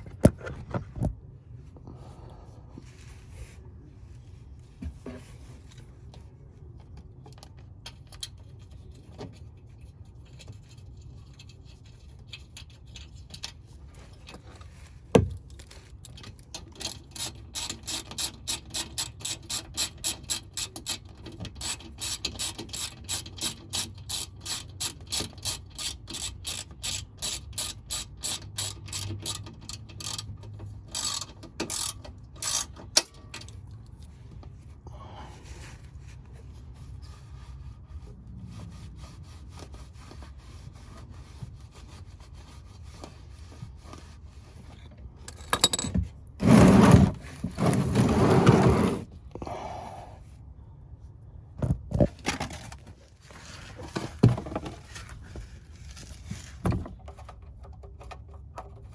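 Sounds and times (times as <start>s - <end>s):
ratchet wrench clicking: 16.6s - 21.0s, 21.6s - 32.8s.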